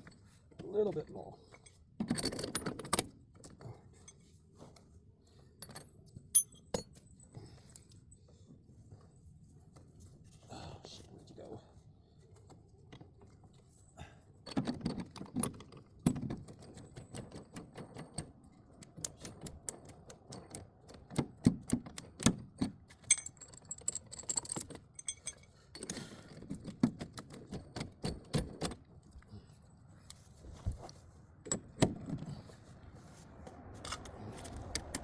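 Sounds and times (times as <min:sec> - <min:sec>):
metal tools clinking and rattling: 0:00.0 - 0:04.9, 0:05.6 - 0:08.3, 0:22.4 - 0:30.6, 0:33.7 - 0:35.0.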